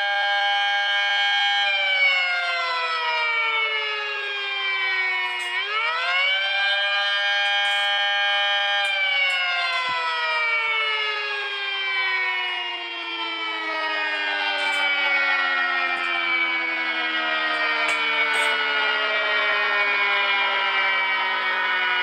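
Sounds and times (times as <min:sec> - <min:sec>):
rotor siren winding: 0:05.2 - 0:06.2, 0:07.3 - 0:10.1, 0:14.3 - 0:16.6, 0:17.4 - 0:18.8.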